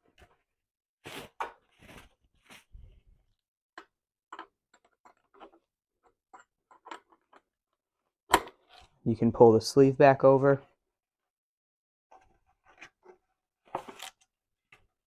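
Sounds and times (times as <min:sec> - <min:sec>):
plastic parts rustling and knocking: 0:03.8 - 0:07.6.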